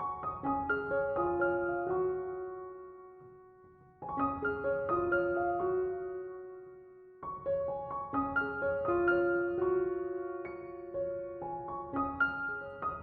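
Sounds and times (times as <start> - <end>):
gentle piano music: 0.0 - 13.0.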